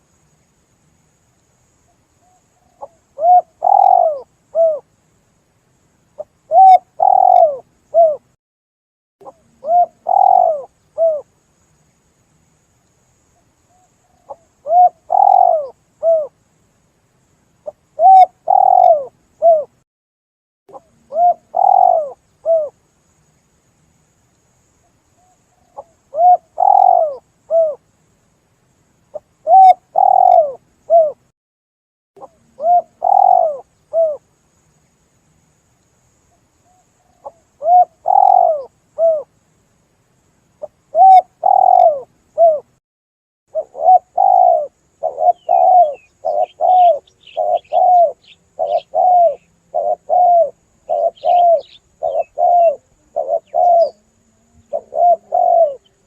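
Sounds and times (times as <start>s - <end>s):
faint high bird chirps: 1.8s - 4.9s, 6.1s - 8.2s, 9.2s - 12.0s, 13.3s - 16.4s, 17.6s - 19.8s, 20.7s - 23.4s, 24.8s - 27.8s, 29.1s - 31.3s, 32.2s - 34.2s, 36.3s - 39.3s, 40.6s - 42.8s, 43.5s - 56.0s
dove cooing: 2.2s - 4.8s, 6.2s - 8.3s, 9.2s - 11.3s, 13.7s - 16.4s, 17.6s - 19.8s, 20.7s - 22.8s, 25.2s - 27.8s, 29.4s - 31.2s, 32.2s - 34.2s, 36.7s - 39.3s, 40.6s - 42.7s, 43.5s - 56.0s.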